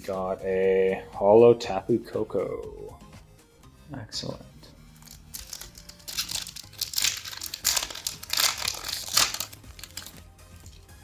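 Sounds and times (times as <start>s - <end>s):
foil wrapper crinkling and tearing: 5.0s - 11.0s.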